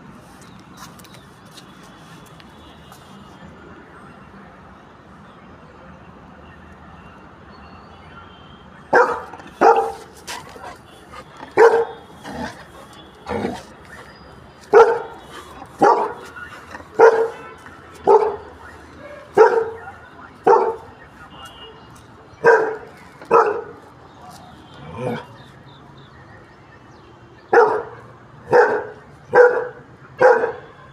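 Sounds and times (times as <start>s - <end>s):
puppy barking: 8.9s - 20.9s, 22.4s - 25.3s, 27.5s - 30.7s.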